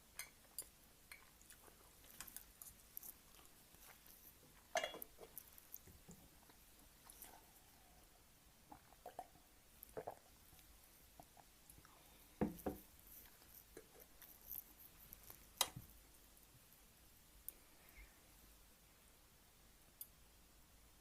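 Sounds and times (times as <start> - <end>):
wet chewing noises: 0.5 - 7.7.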